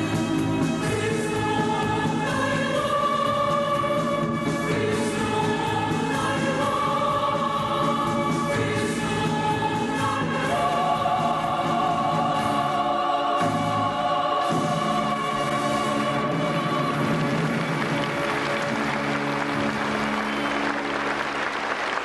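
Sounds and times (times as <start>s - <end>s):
choir singing a hymn: 0.0s - 18.1s.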